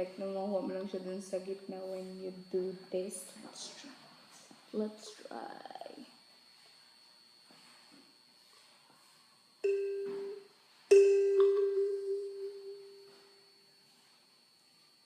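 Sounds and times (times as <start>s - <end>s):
kalimba tine plucked: 9.6s - 13.1s.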